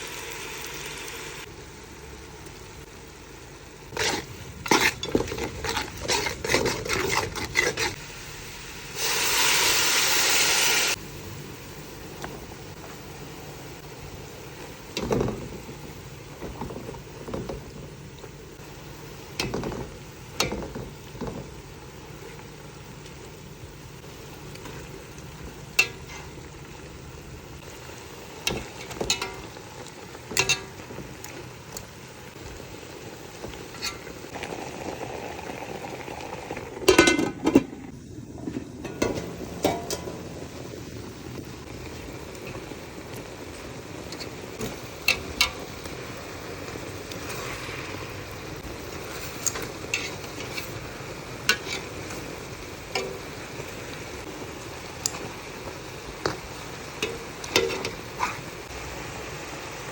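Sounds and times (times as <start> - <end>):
steady low hiss: 0.0 - 35.2, 35.8 - 59.9
utensils clinking against pot: 30.3 - 30.9, 49.3 - 50.8, 57.0 - 58.4.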